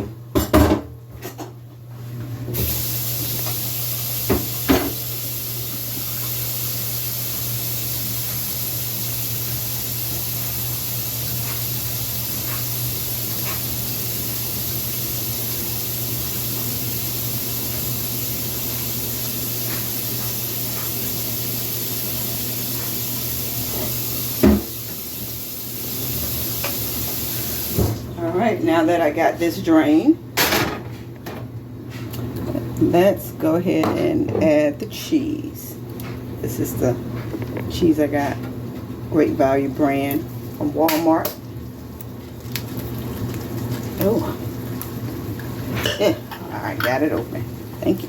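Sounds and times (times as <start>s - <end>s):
water running from a tap: 2.6s - 28.1s, 42.3s - 48.0s.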